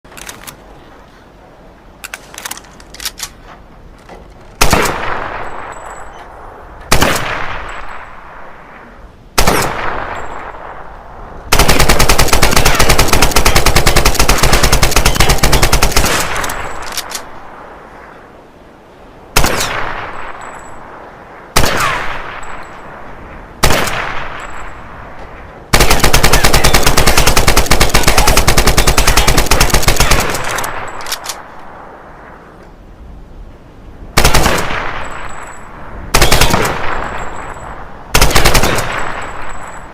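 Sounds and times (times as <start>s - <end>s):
rifle clicks: 0.1s - 0.7s, 2.0s - 3.4s, 14.8s - 17.3s, 27.6s - 31.7s
rifle single shots: 4.6s - 5.7s, 6.9s - 8.2s, 9.4s - 10.7s, 25.7s - 31.5s, 36.1s - 39.8s.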